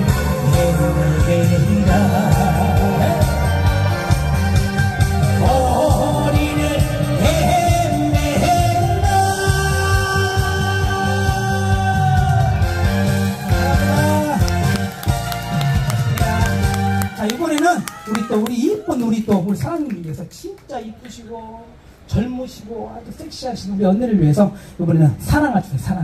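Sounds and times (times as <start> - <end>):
person singing long notes: 0.0 - 14.9
backing track with pulsing bass: 0.0 - 18.4.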